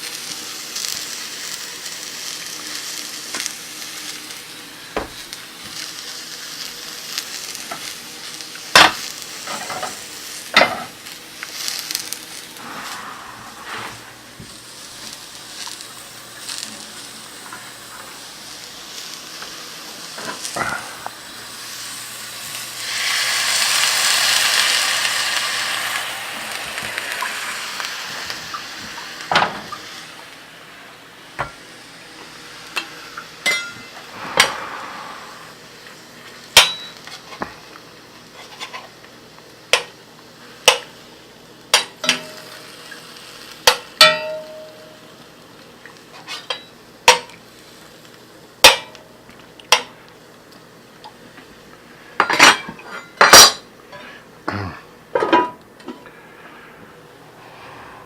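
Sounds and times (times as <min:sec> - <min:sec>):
food sizzling in a pan: 0:00.0 - 0:54.3
utensils clinking on pots: 0:32.8 - 0:34.0, 0:36.6 - 0:37.4, 0:41.7 - 0:42.6, 0:43.6 - 0:45.0, 0:46.2 - 0:47.4, 0:48.6 - 0:49.0, 0:52.2 - 0:54.1, 0:55.1 - 0:56.0.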